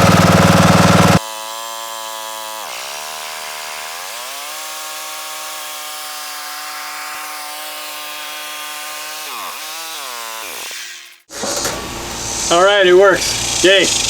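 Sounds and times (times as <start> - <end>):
lawn mower engine running: 0.0 - 1.2, 11.3 - 14.0.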